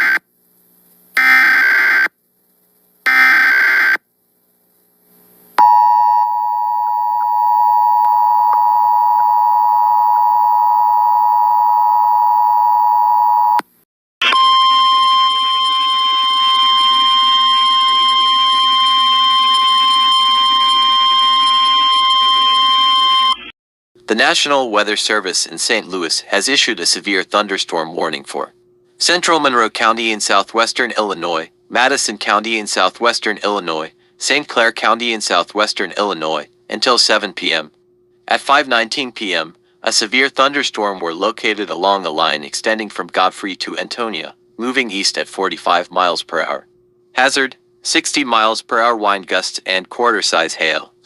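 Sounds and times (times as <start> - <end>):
steady warning tone: 5.6 - 13.6, 14.2 - 23.5
two-tone attention signal: 5.6 - 13.6, 14.2 - 23.5
screeching digital data bursts: 15.3 - 23.3
static: 15.3 - 23.3.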